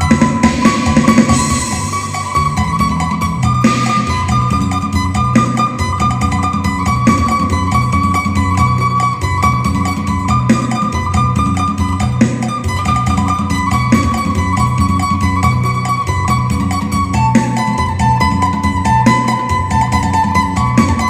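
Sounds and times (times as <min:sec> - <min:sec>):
steady drone: 0:00.0 - 0:13.8
low repeating accompaniment: 0:00.0 - 0:21.0
plucked lute melody: 0:00.0 - 0:21.0.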